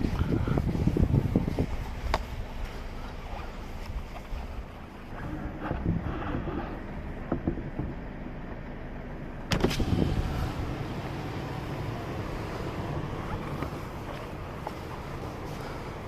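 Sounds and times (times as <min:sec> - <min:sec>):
wind on microphone: 0:00.0 - 0:02.6
car engine idling: 0:00.0 - 0:16.0.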